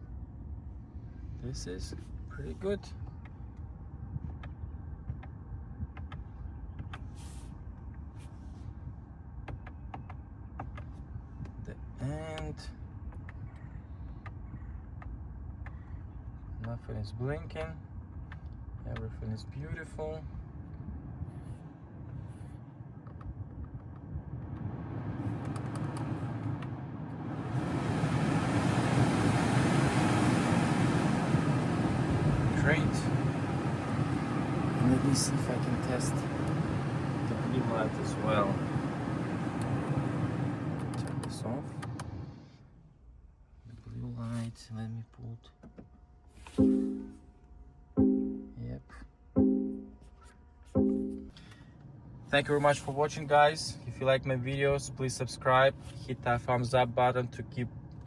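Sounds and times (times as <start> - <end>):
steady low rumble: 0.0 - 9.5, 26.1 - 40.8, 46.6 - 58.0
climate blower fan speeding up: 22.8 - 42.5.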